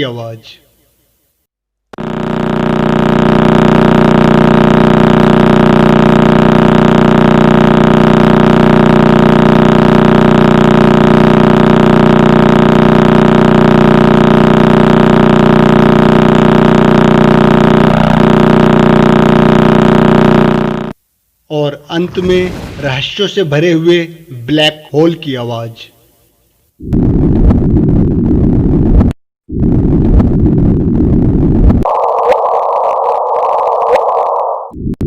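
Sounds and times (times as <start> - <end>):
droning hum of stacked tones: 2.0 - 22.0.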